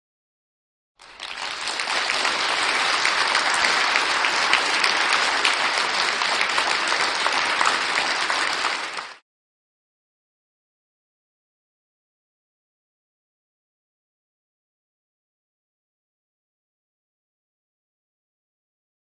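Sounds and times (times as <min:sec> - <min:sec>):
crowd clapping: 0:01.0 - 0:09.2.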